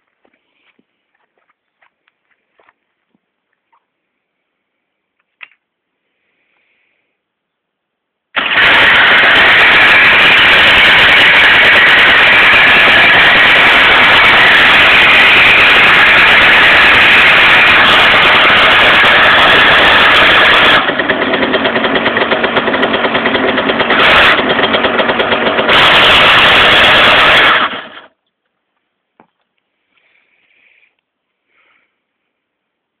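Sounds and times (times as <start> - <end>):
moped engine running loud: 8.4 - 28.1.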